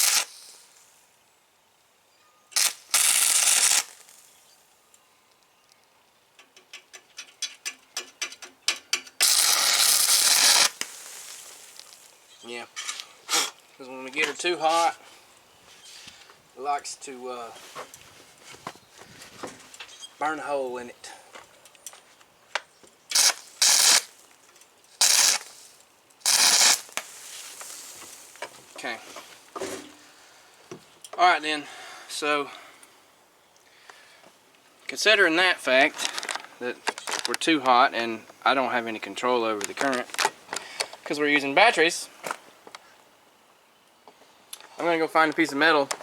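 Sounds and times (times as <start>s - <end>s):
welding arc bursts: 0.0s - 0.7s, 2.5s - 4.3s, 9.2s - 12.1s, 23.1s - 24.2s, 25.0s - 25.6s, 26.2s - 27.1s.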